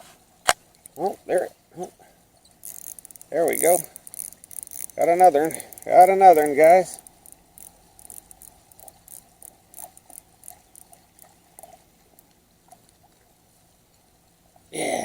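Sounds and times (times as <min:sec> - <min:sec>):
light ticks: 0:02.5 - 0:13.3.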